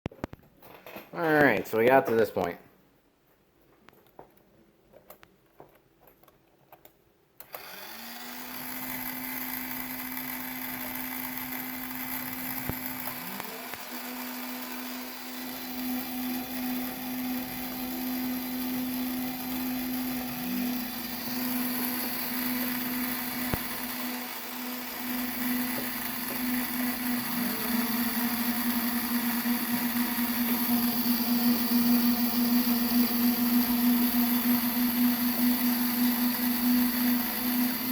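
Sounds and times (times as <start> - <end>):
electric motors whining: 7.4 - 37.9
motor chirp rising in pitch: 25.1 - 37.9.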